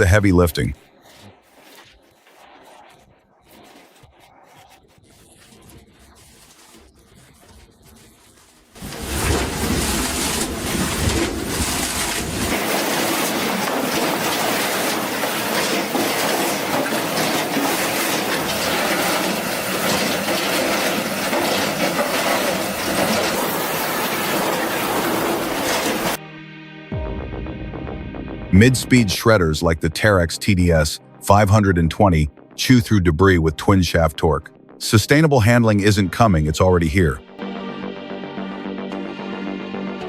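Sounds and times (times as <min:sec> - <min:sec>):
faint rubbing: 0:00.0 - 0:26.2
wood-processing machine clatter: 0:08.4 - 0:26.2.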